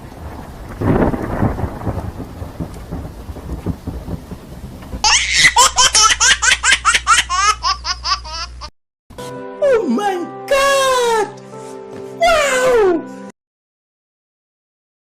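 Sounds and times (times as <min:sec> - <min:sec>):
low rumbling thunder: 0:00.0 - 0:05.2
rain: 0:00.0 - 0:05.9
high-pitched laughter: 0:05.1 - 0:08.7.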